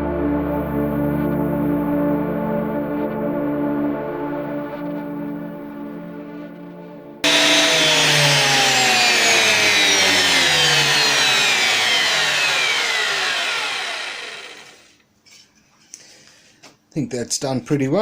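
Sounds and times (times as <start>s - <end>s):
planer motor whine spinning down: 7.2s - 14.9s.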